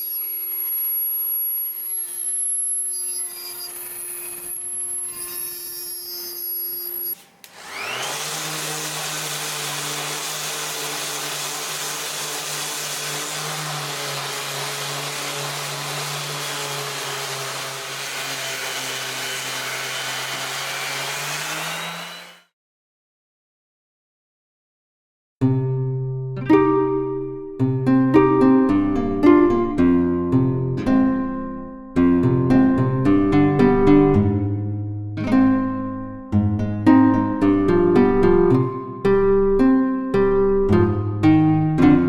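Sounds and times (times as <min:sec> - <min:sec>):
power tool motor whining: 0:00.0 - 0:22.5.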